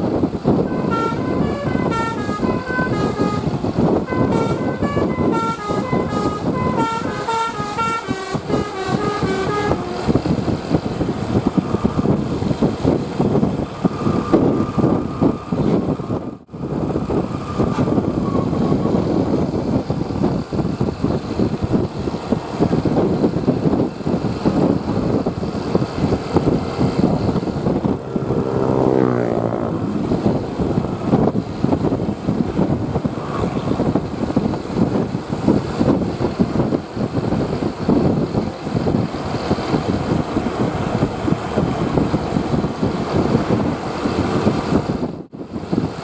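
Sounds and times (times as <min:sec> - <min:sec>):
bus engine: 0:00.0 - 0:46.0
traffic noise: 0:00.0 - 0:46.0
horn with sliding pitch: 0:00.7 - 0:10.5.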